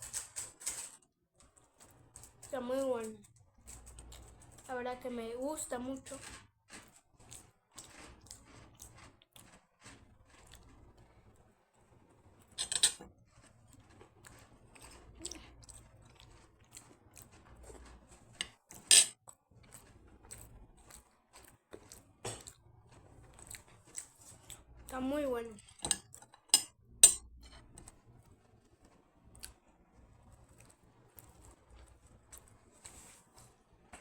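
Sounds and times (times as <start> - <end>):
cutlery clinking and scraping on plate: 12.6 - 13.2, 18.4 - 19.2, 25.6 - 27.9.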